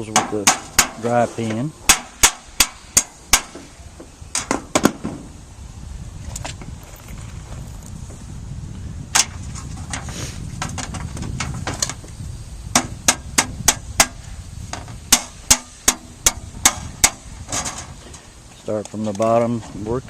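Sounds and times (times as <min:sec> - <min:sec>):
hammer striking metal: 0:01.9 - 0:03.6.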